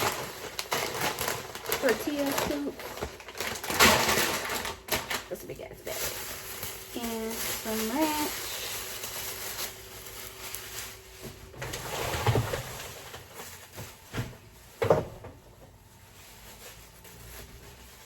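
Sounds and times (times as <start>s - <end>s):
shopping bags rustling: 0.0s - 18.0s.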